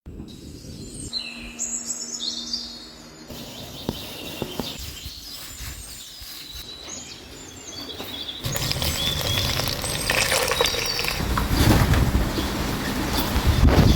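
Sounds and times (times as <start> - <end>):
small birds chirping and singing: 0.1 - 13.9.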